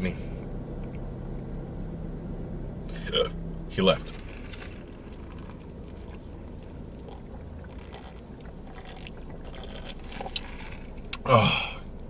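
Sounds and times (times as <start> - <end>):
steady low rumble: 0.0 - 12.0
person chewing: 4.5 - 11.2.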